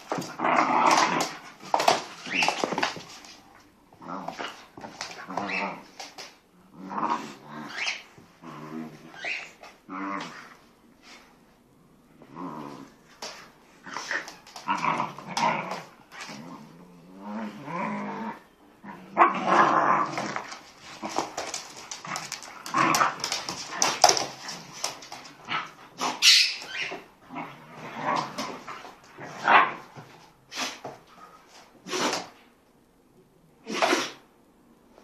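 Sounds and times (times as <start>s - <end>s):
dogs growling: 12.2s - 13.0s, 13.9s - 26.2s.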